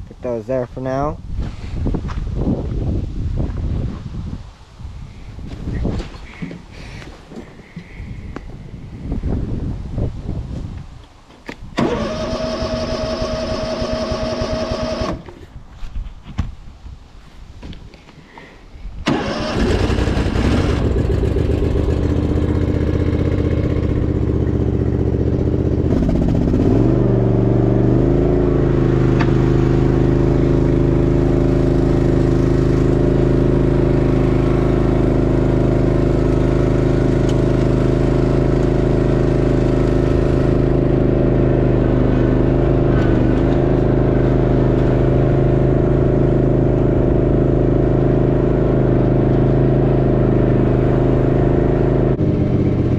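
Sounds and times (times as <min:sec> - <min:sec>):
riding mower engine droning: 0:11.8 - 0:15.6, 0:19.0 - 0:52.9.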